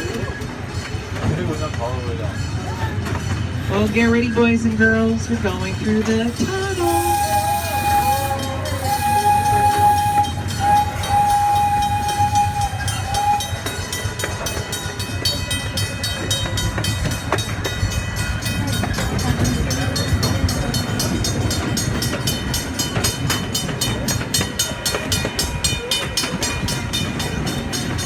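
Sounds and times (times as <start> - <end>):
train wheels clicking over rail joints: 0.0 - 28.0
train whistle blasts: 6.1 - 14.3.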